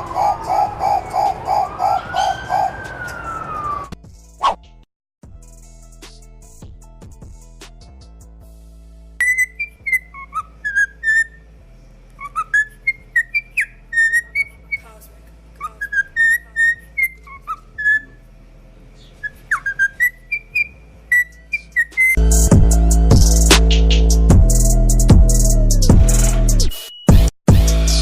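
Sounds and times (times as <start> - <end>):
songbird singing: 0.0 - 3.8, 9.2 - 22.2.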